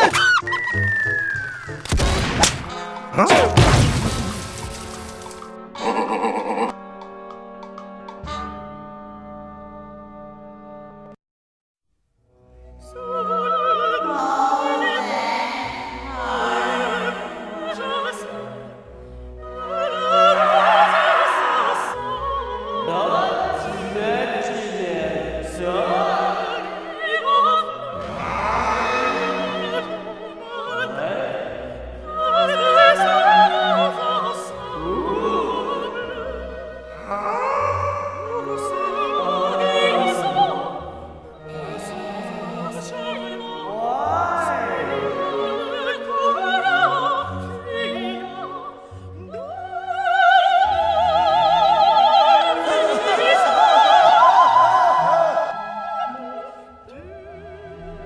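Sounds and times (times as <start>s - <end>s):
orchestral music: 0.0s - 8.9s, 12.9s - 58.0s
operatic singing with vibrato: 12.8s - 58.0s.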